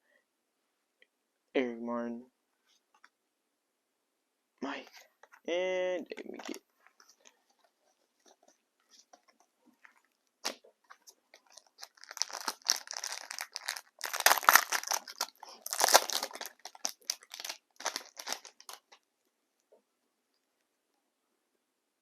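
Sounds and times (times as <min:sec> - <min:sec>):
wrapper crackling and tearing: 0:11.4 - 0:19.0.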